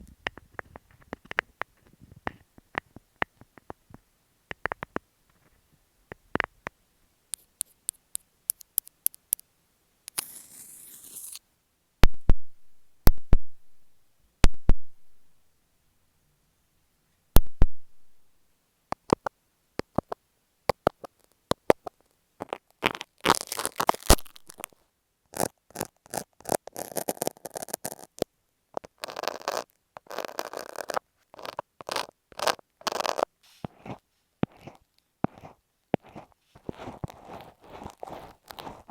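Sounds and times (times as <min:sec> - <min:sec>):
sharp taps and clicks: 0:00.2 - 0:05.0, 0:07.4 - 0:09.5, 0:18.9 - 0:22.0
scratchy rubbing: 0:10.1 - 0:11.4, 0:25.4 - 0:38.9
scratchy rustle: 0:10.2 - 0:11.4, 0:25.4 - 0:28.2, 0:28.8 - 0:38.9.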